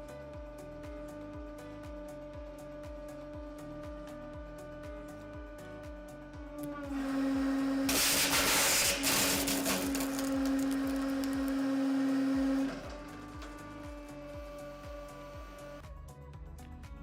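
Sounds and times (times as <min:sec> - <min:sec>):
hydraulic press motor humming: 0:00.4 - 0:15.8
candles being crushed: 0:07.9 - 0:13.5.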